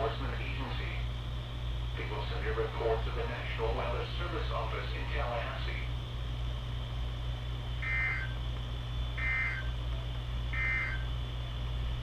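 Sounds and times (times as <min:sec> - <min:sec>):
steady low hum: 0:00.0 - 0:12.0
buzzy digital squawks: 0:07.8 - 0:08.4, 0:09.2 - 0:09.7, 0:10.5 - 0:11.1.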